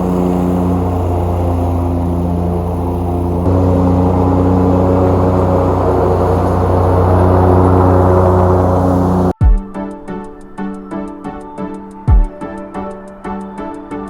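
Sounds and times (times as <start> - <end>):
lawn mower engine drone: 0.0 - 9.4.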